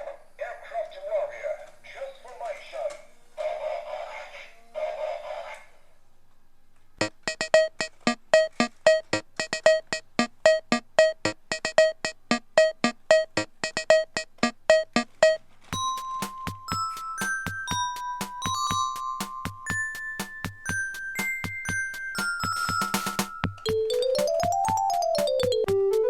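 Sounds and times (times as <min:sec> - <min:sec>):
staccato synthesizer keyboard tune: 0:07.0 - 0:26.0
chiming bell-like melody: 0:15.8 - 0:25.7.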